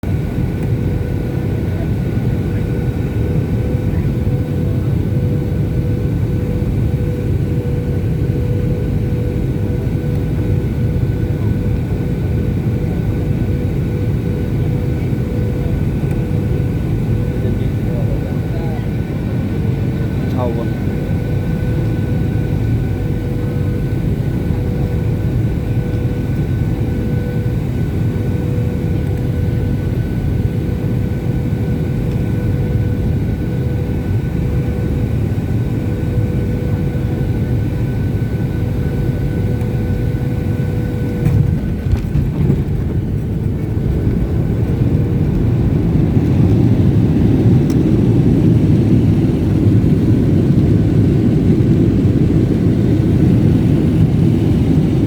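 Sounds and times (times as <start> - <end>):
steady whine: 34.0 - 55.0
jet engine cabin rush: 38.2 - 55.0.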